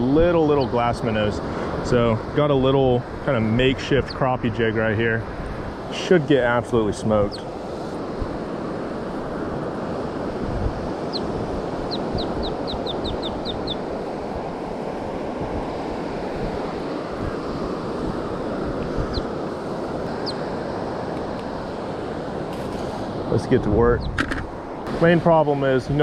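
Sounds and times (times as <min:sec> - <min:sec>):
surf rushing: 0:00.0 - 0:26.0
wind: 0:00.0 - 0:26.0
bird chirping: 0:11.9 - 0:13.8, 0:19.0 - 0:19.3, 0:20.1 - 0:20.4.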